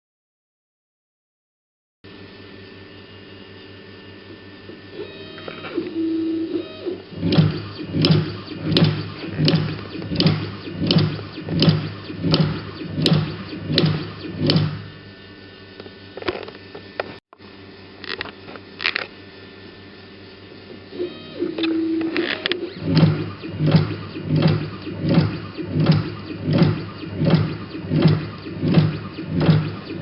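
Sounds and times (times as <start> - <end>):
motor whine: 2.1 - 30.0
cutting machine cycling: 4.3 - 15.3, 20.7 - 30.0
sharp machine clicks: 6.5 - 15.0, 21.4 - 30.0.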